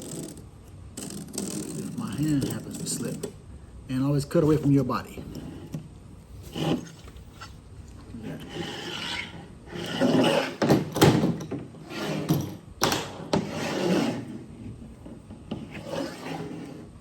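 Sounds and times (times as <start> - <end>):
knife scraping screen frame: 6.4 - 7.5, 8.3 - 10.7, 13.4 - 14.4, 15.5 - 16.9.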